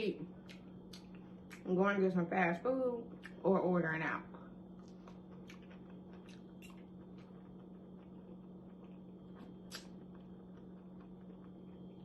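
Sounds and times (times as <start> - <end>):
chewing and wet mouth clicks: 4.8 - 11.8.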